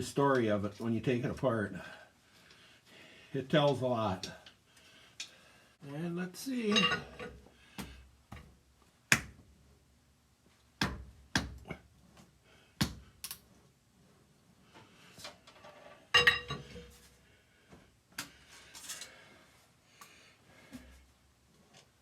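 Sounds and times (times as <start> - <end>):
faint metallic clinking: 6.6 - 7.4, 15.7 - 17.0.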